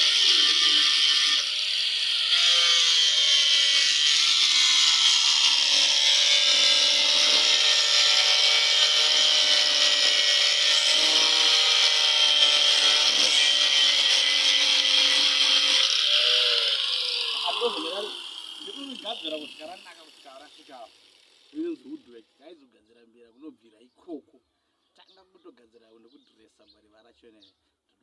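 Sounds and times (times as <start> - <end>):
hiss of cutting wood: 0.0 - 2.6
power tool motor whine: 0.0 - 22.0.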